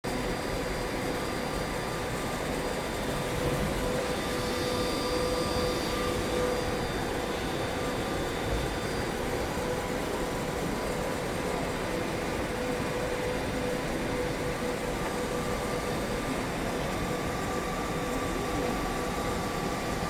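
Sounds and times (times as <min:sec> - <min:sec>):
welding machine fan whir: 0:00.0 - 0:20.0
steady whining tones: 0:00.1 - 0:20.0.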